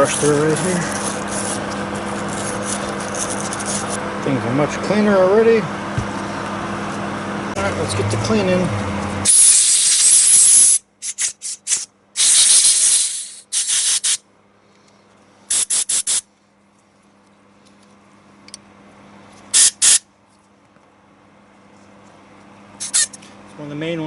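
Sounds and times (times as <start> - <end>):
cleaning spray hissing: 9.3 - 14.2.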